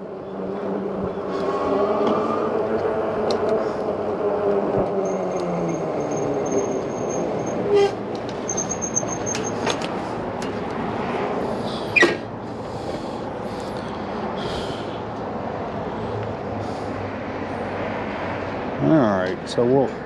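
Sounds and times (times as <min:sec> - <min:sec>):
motor vehicle passing: 0:00.0 - 0:20.0
wind and road noise: 0:00.0 - 0:20.0
short loud squeal: 0:06.0 - 0:09.6, 0:12.0 - 0:12.2.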